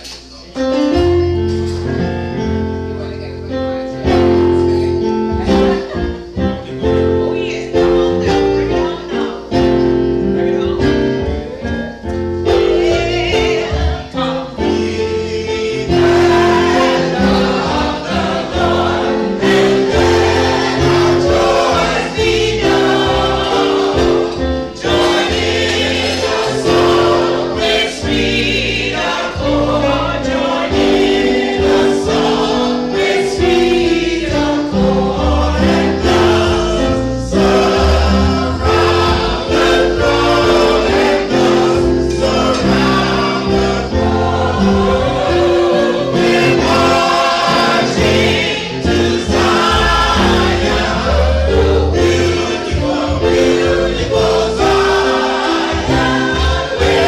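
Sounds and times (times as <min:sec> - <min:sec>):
gospel choir singing: 0:00.0 - 0:57.0
instrumental accompaniment: 0:00.0 - 0:57.0
held bass notes: 0:09.6 - 0:57.0.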